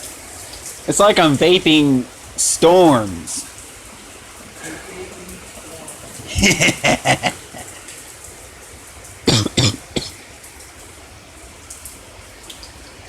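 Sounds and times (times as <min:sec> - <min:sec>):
rain hissing: 0:00.0 - 0:13.0
man's voice in short bursts: 0:00.9 - 0:03.4, 0:04.6 - 0:07.5.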